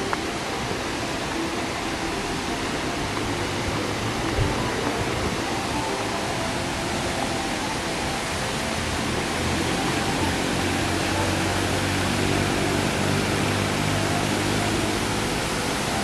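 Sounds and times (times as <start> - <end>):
waterfall rushing: 0.0 - 16.0.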